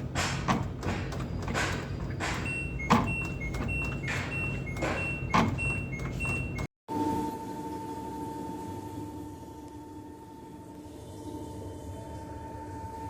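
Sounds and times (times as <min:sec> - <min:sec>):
low machine hum: 0:00.0 - 0:06.7
sharp knocks: 0:00.0 - 0:06.7
washing machine alarm beeps: 0:00.0 - 0:06.7.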